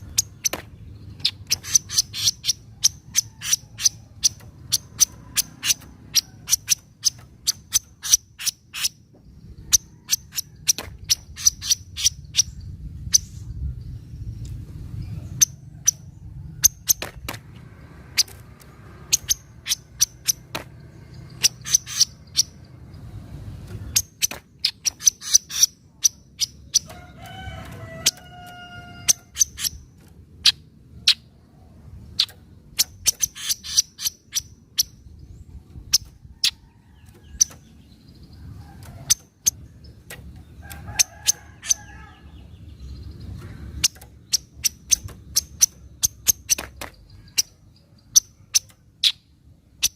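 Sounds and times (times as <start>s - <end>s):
bird chattering call: 0.0s - 9.0s, 9.7s - 12.5s, 21.2s - 22.6s, 23.9s - 27.0s, 32.1s - 35.0s.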